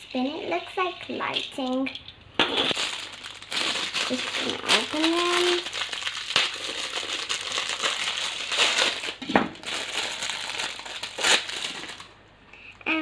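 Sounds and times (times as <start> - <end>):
plastic packaging crinkling: 2.5 - 12.2.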